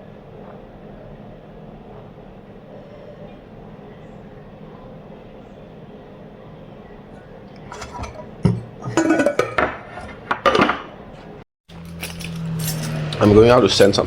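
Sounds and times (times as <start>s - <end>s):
faint hum: 0.0s - 10.2s
low rumbling background noise: 0.0s - 14.0s.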